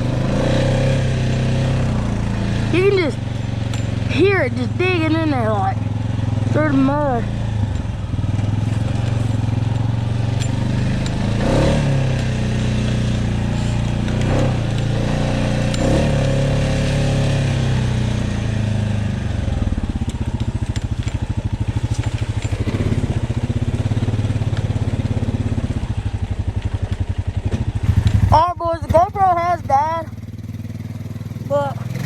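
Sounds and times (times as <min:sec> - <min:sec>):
atv engine revving in mud: 0:00.0 - 0:32.0.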